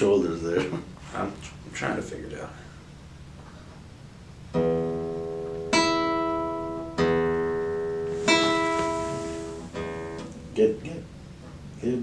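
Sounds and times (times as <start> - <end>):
classical guitar plucked notes: 4.5 - 10.6.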